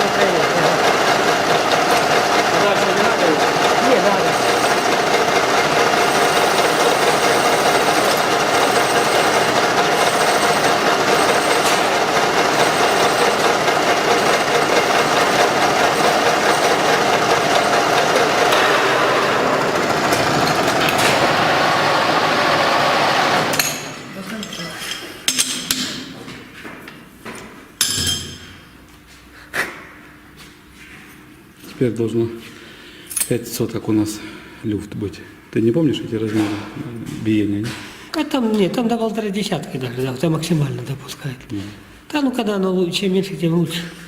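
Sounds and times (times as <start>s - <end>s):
machine rattling: 0.0s - 25.8s.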